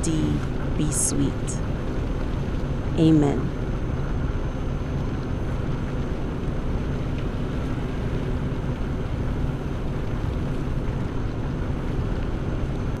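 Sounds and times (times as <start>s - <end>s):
rain: 3.6s - 13.0s.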